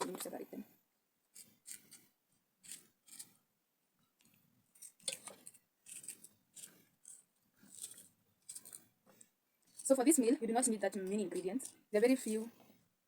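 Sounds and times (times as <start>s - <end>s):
knife cutting vegetables: 1.3s - 3.4s, 4.8s - 12.5s.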